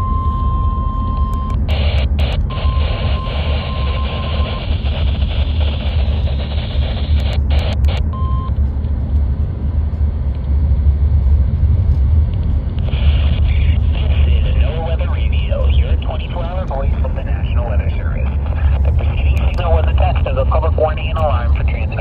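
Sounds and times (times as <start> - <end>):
low hum: 0.0 - 22.0
radio static hiss: 1.6 - 8.1, 12.7 - 22.0.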